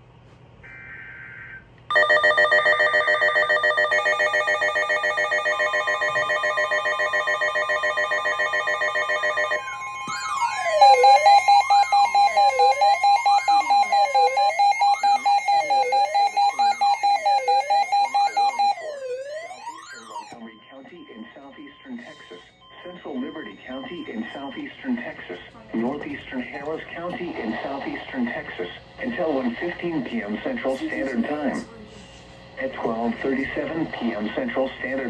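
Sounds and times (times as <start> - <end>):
steady alarm tones: 0.6 - 35.0
pulsing multi-tone alarm ring: 0.7 - 24.3
sweeping siren-like tone: 9.5 - 20.6.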